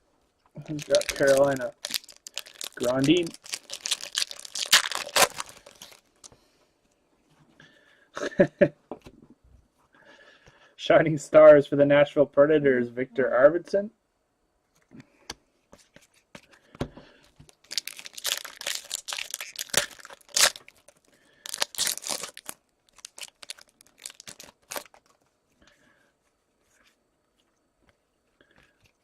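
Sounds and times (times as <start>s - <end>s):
foil wrapper tearing and crinkling: 0.6s - 6.1s, 17.5s - 25.2s.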